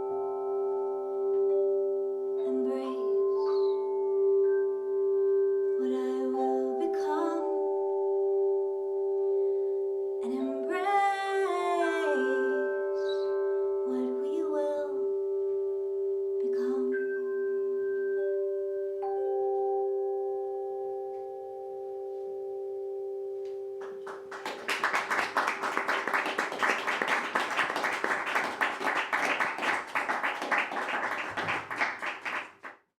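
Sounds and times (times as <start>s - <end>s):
singing bowls ringing: 11.8s - 23.8s
person humming wordless notes: 16.4s - 17.8s
audience applause: 23.8s - 32.8s.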